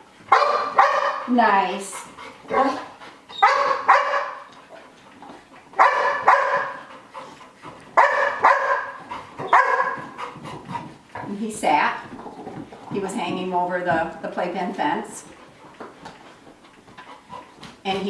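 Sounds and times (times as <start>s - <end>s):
dog barking: 0.3s - 1.3s, 2.5s - 4.5s, 5.8s - 6.9s, 8.0s - 10.1s.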